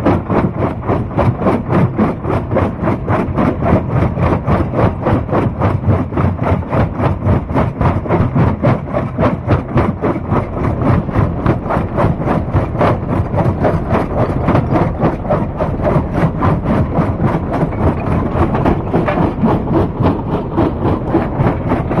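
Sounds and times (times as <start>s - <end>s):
stone crushing machine droning: 0.1s - 22.0s.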